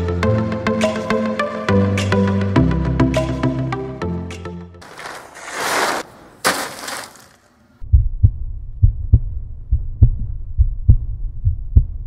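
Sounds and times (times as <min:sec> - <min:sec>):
heartbeat thumps: 0:07.8 - 0:12.0.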